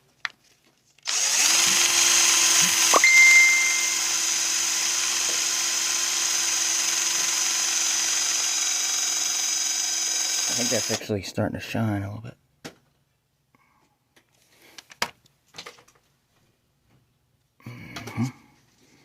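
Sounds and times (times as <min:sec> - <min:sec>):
small power tool running: 0:01.0 - 0:11.0.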